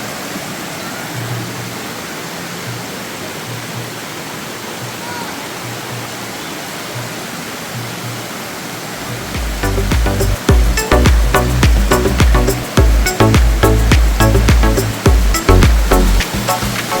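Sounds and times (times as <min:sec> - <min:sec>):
waterfall rushing: 0:00.0 - 0:17.0
soft background music: 0:09.0 - 0:17.0.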